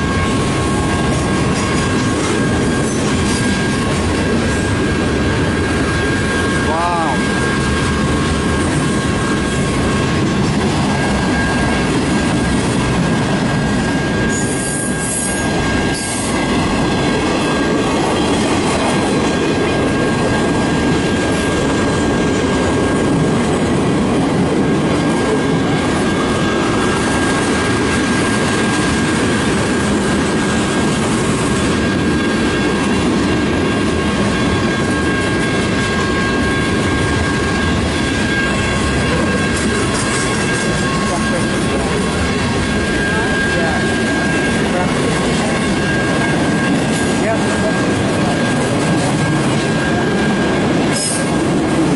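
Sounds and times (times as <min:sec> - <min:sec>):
train wheels rumbling on rails: 0:00.0 - 0:51.9
high-pitched wheel squeal: 0:13.8 - 0:16.3.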